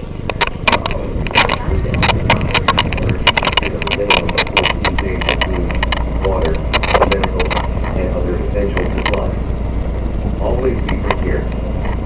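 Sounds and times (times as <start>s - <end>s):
low rumble: 0.0s - 12.0s
sharp clicks and taps: 0.3s - 8.0s.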